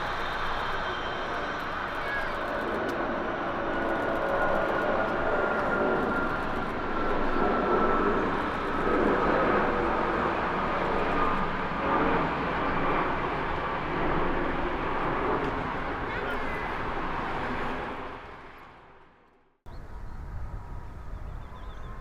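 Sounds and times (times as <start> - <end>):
jet engines passing with whine: 0.0 - 22.0.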